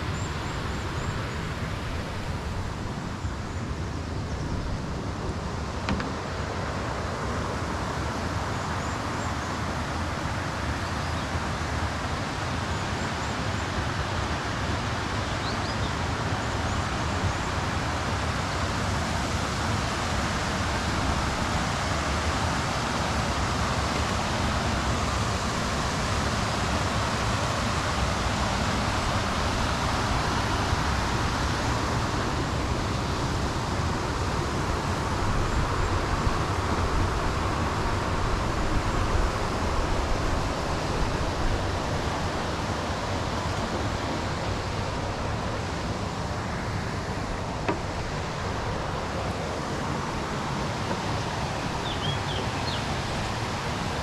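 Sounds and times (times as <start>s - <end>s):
river water rushing: 0.0s - 54.0s
faint high bird chirps: 51.8s - 52.9s.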